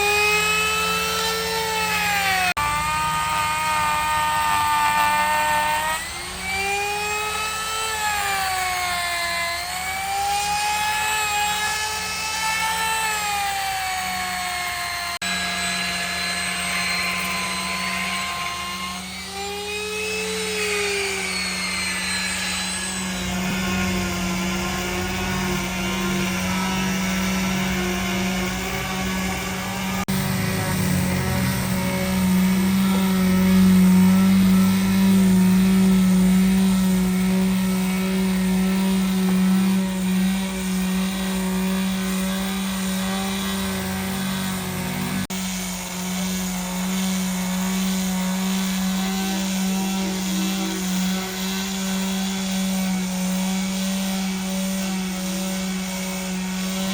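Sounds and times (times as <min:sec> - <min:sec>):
heavy machinery humming: 0:15.2 - 0:37.2.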